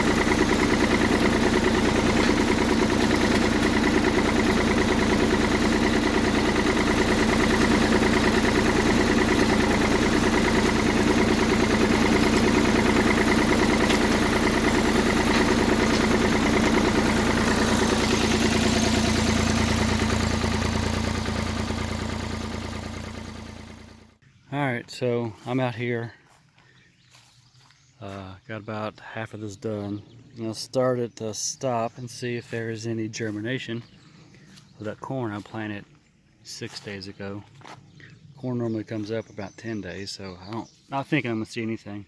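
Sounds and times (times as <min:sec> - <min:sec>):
engine running steadily: 0:00.0 - 0:24.2.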